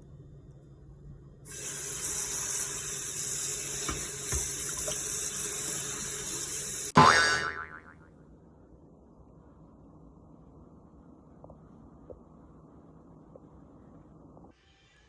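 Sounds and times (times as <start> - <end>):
water running from a tap: 1.5 - 7.0.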